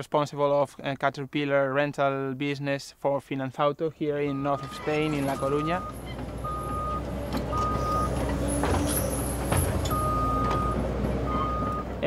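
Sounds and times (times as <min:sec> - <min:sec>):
diesel engine rumbling: 0:04.2 - 0:12.0
single-tone beeping alarm: 0:04.3 - 0:08.2, 0:09.9 - 0:11.8.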